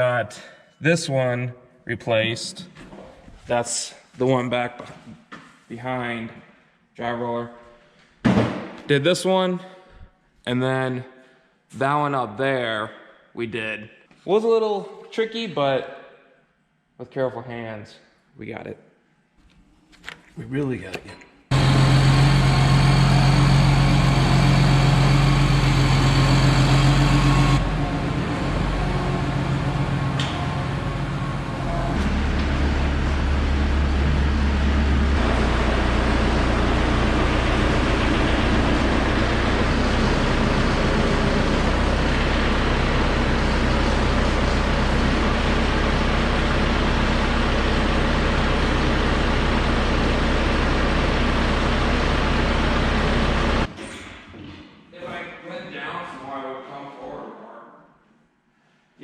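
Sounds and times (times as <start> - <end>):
heavy machinery engine running: 21.5 - 53.7.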